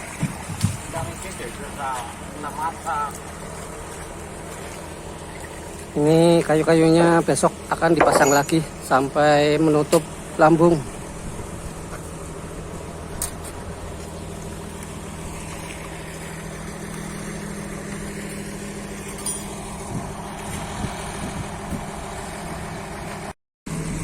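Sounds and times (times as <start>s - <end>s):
engine idling: 0.0s - 24.0s.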